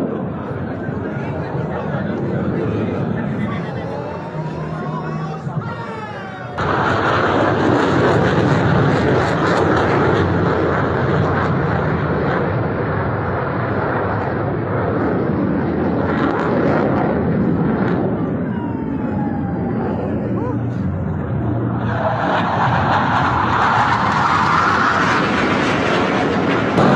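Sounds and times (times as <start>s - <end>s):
fighter jet flying past: 0.0s - 26.9s.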